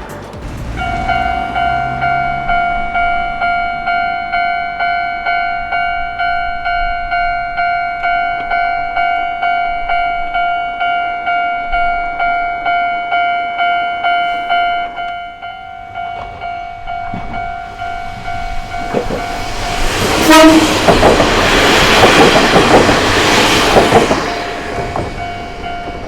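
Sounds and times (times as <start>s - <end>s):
level crossing bell ringing: 0.8s - 20.4s.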